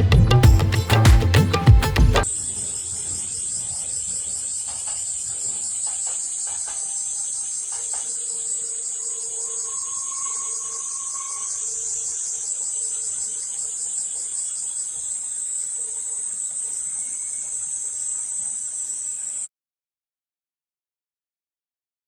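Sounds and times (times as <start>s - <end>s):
crickets chirping: 2.2s - 19.5s.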